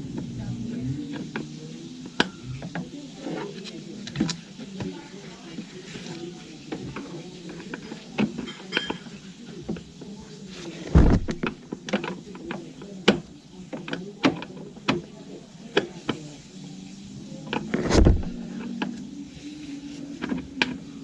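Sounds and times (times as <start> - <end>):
faint steady hum: 0.0 - 21.0
heavy thump: 10.9 - 11.5, 17.8 - 18.4.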